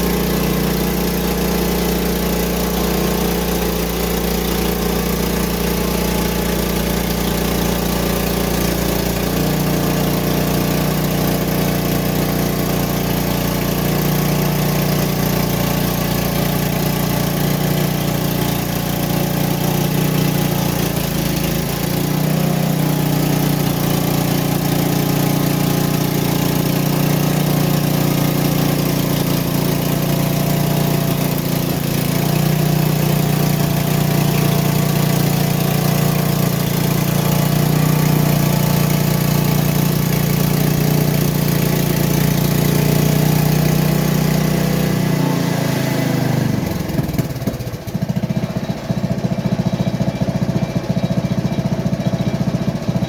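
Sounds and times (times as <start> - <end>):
small gasoline engine running: 0.0 - 53.0.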